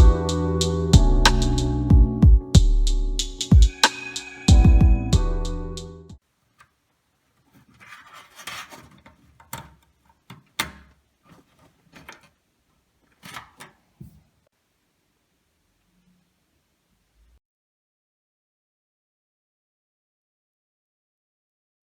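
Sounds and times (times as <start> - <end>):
hardware clicks and knocks: 7.4 - 12.4, 13.0 - 14.3
brief scrapes: 7.5 - 9.2.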